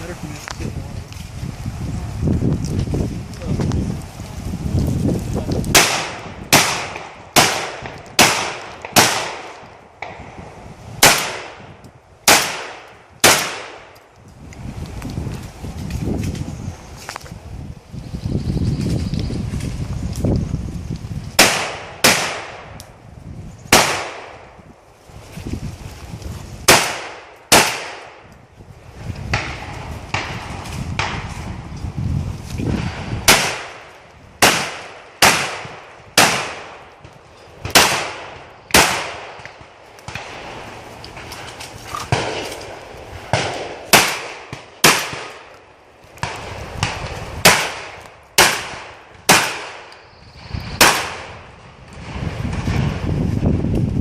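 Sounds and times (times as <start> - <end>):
shotgun shots with echo: 5.7 - 10.2, 11.0 - 11.6, 12.3 - 13.9, 21.4 - 22.7, 23.7 - 24.4, 26.7 - 28.2, 32.8 - 33.8, 34.4 - 36.8, 37.7 - 39.4, 43.3 - 45.5, 46.2 - 49.9, 50.8 - 51.3.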